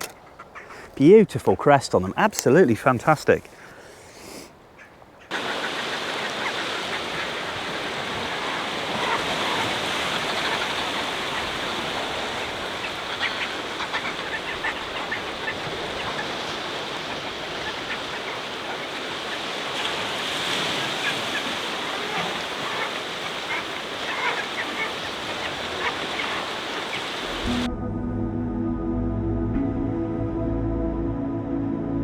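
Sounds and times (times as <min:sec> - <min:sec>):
seabird calls: 0:00.0 - 0:01.7, 0:03.5 - 0:27.7
surf washing against cliffs: 0:05.3 - 0:27.7.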